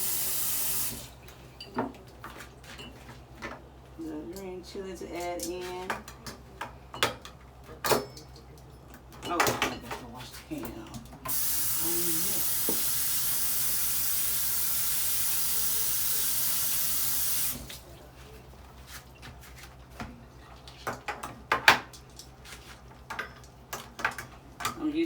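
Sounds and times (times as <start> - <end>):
tap water running: 0.0 - 1.2, 11.3 - 17.8.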